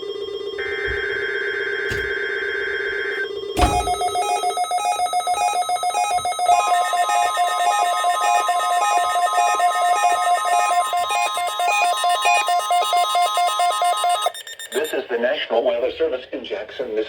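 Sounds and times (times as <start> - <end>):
steady warning alarm tone: 0.0 - 15.2
radio alarm warbling: 3.6 - 15.2.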